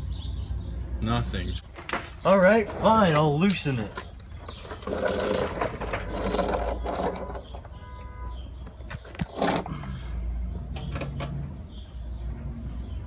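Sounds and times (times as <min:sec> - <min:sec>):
hand scraping oil filter: 0:03.9 - 0:08.2, 0:08.8 - 0:10.0.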